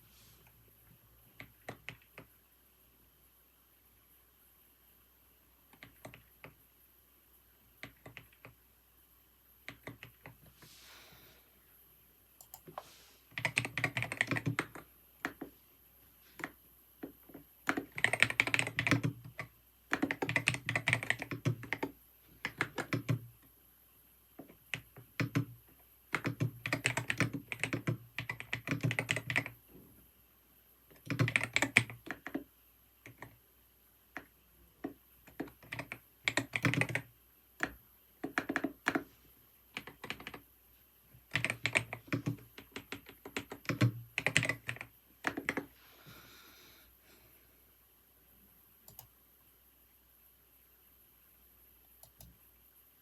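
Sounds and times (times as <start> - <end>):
computer keyboard typing: 1.4 - 2.3, 5.7 - 6.6, 7.8 - 8.6, 9.6 - 10.4, 12.4 - 15.5, 16.4 - 23.4, 24.4 - 29.6, 30.9 - 33.4, 34.1 - 39.1, 39.7 - 40.5, 41.2 - 45.7, 48.9 - 49.1, 52.0 - 52.4.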